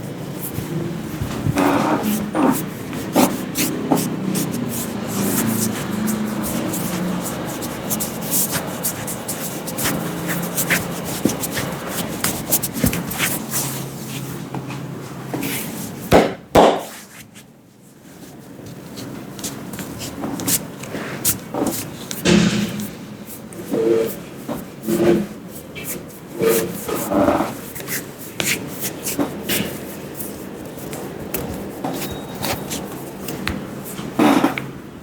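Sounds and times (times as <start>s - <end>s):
loud sharp strikes: 22.2s - 23.5s.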